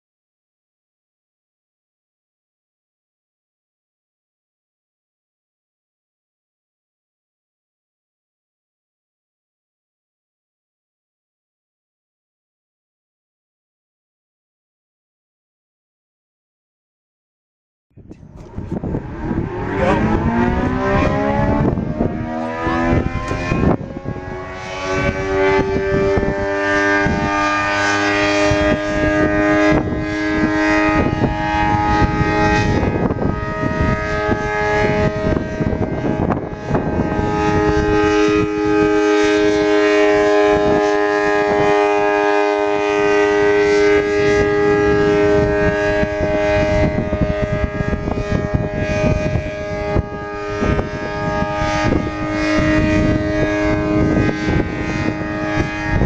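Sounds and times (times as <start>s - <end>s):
warning siren wailing: 18.0s - 56.0s.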